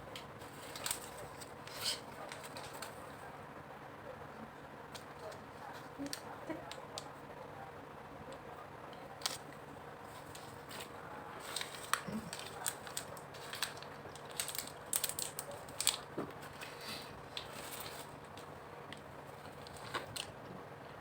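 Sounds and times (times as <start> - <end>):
plastic packaging crinkling: 0.1 - 3.1, 9.1 - 20.4.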